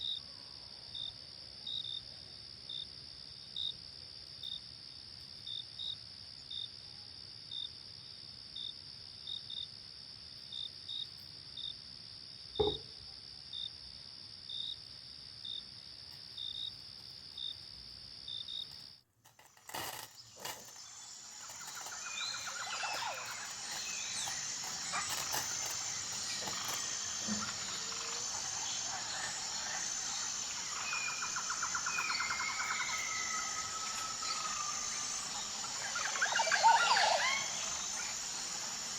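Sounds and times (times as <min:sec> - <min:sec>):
crickets chirping: 0:00.0 - 0:38.9
insect chorus with high pulse: 0:00.0 - 0:38.9
sharp knock: 0:12.6 - 0:12.9
birds calling with gliding notes: 0:20.4 - 0:38.9.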